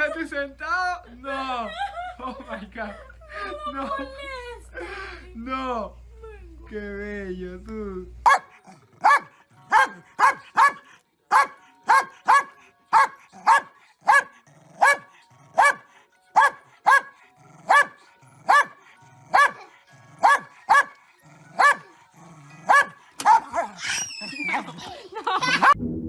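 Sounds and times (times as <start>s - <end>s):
dog barking: 8.3s - 21.9s, 22.6s - 23.8s.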